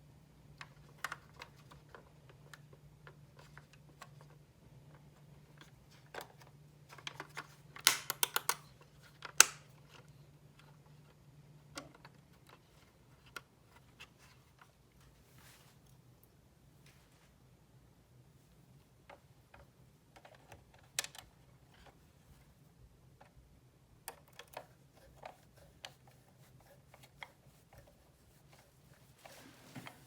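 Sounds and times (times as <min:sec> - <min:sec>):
faint steady hum: 0:00.0 - 0:30.0
clicks and taps of small parts: 0:05.6 - 0:10.0.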